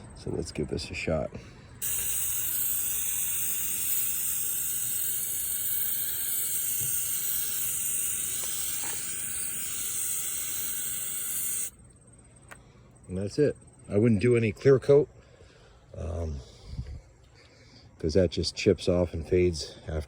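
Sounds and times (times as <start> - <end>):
aerosol can spraying: 1.8 - 11.7.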